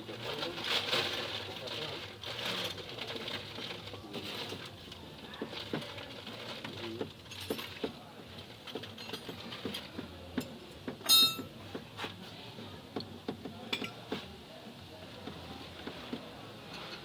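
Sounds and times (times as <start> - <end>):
loud ringing metal clink: 11.1 - 11.5.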